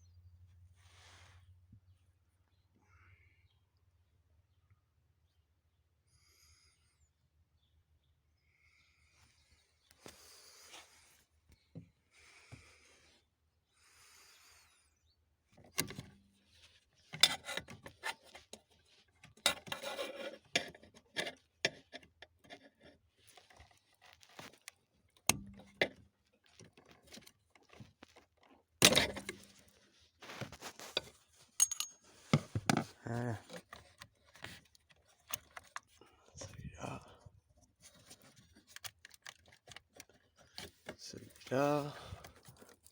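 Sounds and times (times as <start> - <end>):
tools knocking and clicking: 31.6 - 32.9.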